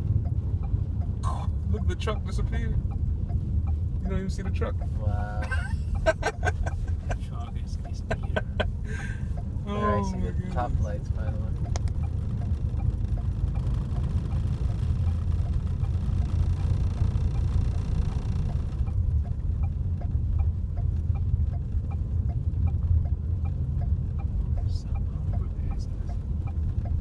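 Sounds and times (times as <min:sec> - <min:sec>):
faint regular ticking: 0:00.0 - 0:09.8, 0:10.4 - 0:27.0
car engine and tyres rumbling: 0:00.0 - 0:27.0.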